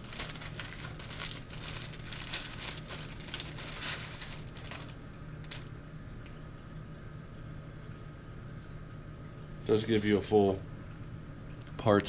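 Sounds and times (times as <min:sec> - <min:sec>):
packaging crinkling and rustling: 0:00.0 - 0:05.8
low steady hum: 0:00.0 - 0:12.0.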